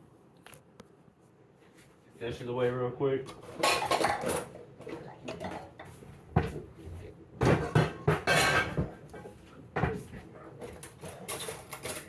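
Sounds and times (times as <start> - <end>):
dishes and cutlery clattering: 3.3 - 6.6, 7.4 - 12.0.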